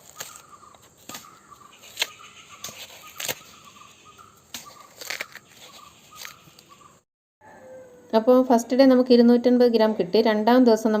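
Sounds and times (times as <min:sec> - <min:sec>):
banana stem knocking and snapping: 0:00.0 - 0:03.5, 0:04.5 - 0:05.5.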